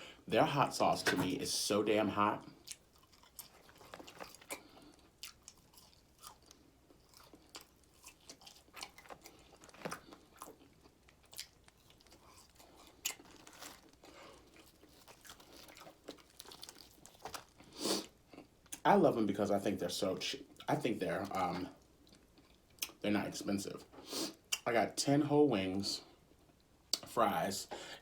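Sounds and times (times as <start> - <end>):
person chewing crispy chicken: 2.4 - 18.8.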